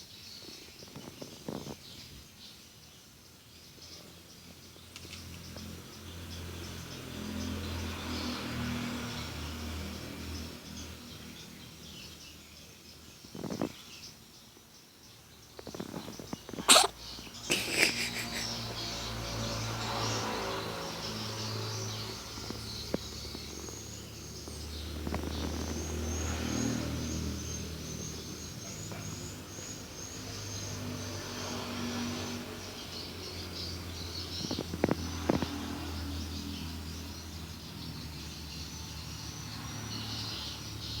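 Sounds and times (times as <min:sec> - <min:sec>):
kitten purring: 0:16.6 - 0:16.9, 0:17.5 - 0:18.5
kitten sneezing: 0:16.6 - 0:18.6.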